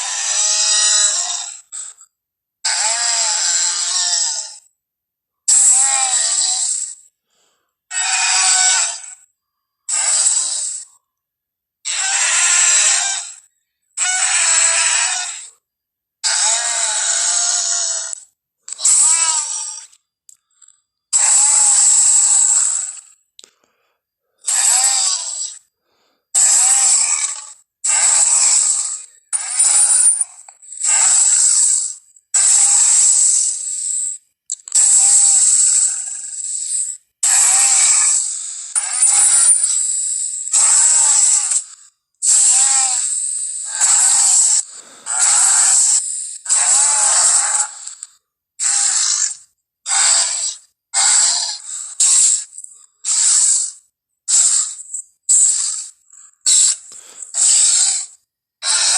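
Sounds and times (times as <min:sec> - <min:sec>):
harsh hissy dinosaur roars: 0:00.0 - 0:01.5, 0:02.7 - 0:04.6, 0:05.8 - 0:06.8, 0:11.9 - 0:13.4, 0:14.0 - 0:15.5, 0:16.2 - 0:18.2, 0:24.5 - 0:25.6, 0:26.4 - 0:30.2, 0:30.8 - 0:33.7, 0:37.2 - 0:48.0, 0:48.6 - 0:52.4, 0:56.5 - 0:58.9
harsh bellowing creature calls: 0:16.2 - 0:18.1, 0:38.8 - 0:39.8, 0:58.6 - 0:58.9.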